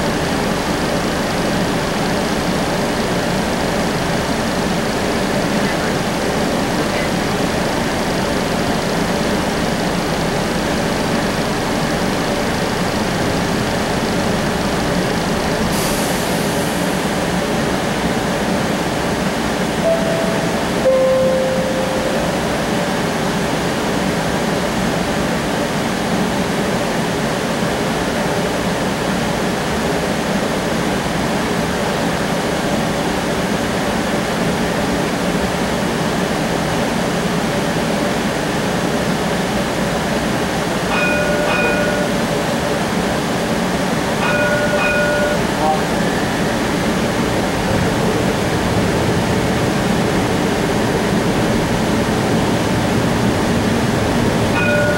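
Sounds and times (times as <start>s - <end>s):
streetcar rumble and hiss: 0.0s - 54.9s
electronic chime tones: 19.8s - 22.6s.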